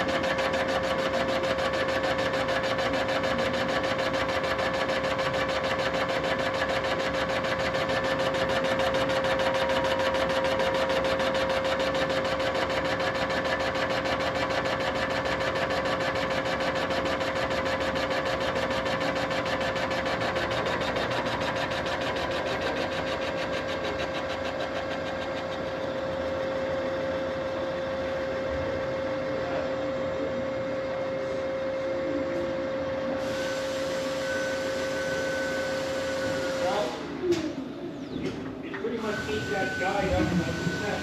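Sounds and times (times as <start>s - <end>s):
high-pitched machine tone: 31.7s - 37.0s, 38.8s - 41.0s.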